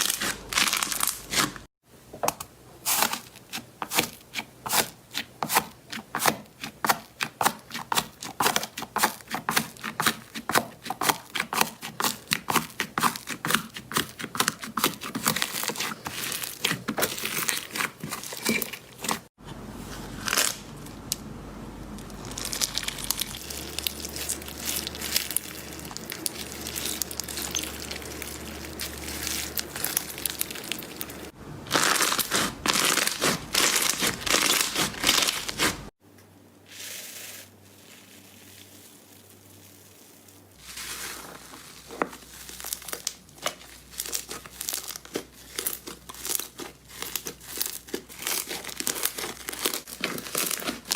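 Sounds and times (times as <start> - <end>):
slime crackling and popping: 22.1 - 35.9, 37.3 - 50.9.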